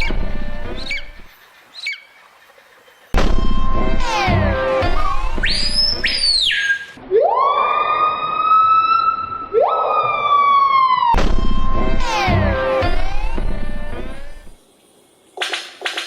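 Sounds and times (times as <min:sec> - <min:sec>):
siren-like wail: 0:03.3 - 0:06.0, 0:07.0 - 0:14.6.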